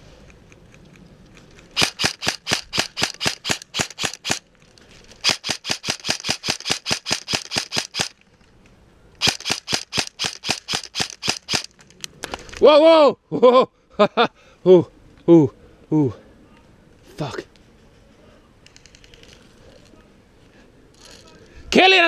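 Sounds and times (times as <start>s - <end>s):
airsoft rifle shots: 1.8s - 4.4s, 5.2s - 8.2s, 9.2s - 11.7s.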